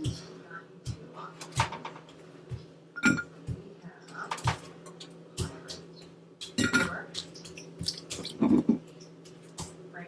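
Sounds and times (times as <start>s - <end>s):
steady low hum: 0.0s - 10.0s
dishes and utensils clinking: 3.0s - 3.5s, 4.2s - 9.7s.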